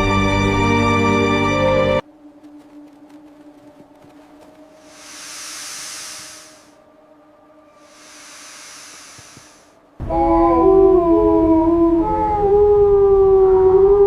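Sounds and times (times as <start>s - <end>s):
low music drone: 0.0s - 14.0s
wind gusts: 2.0s - 14.0s
wolves howling: 10.0s - 14.0s.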